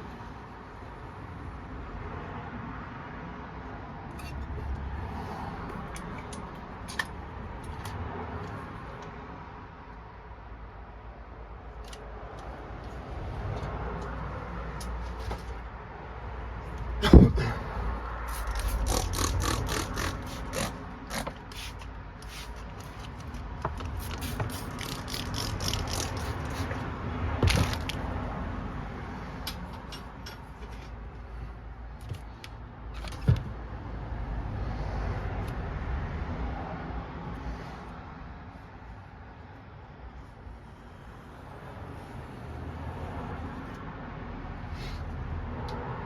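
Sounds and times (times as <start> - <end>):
mechanical clicking and scraping: 4.1 - 5.1, 5.7 - 9.2, 18.2 - 28.1.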